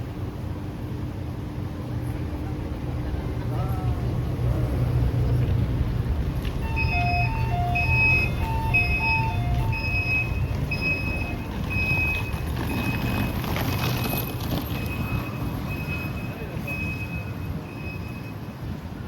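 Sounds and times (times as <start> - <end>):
low traffic rumble: 0.0 - 19.0
high electronic beeps: 6.6 - 13.4.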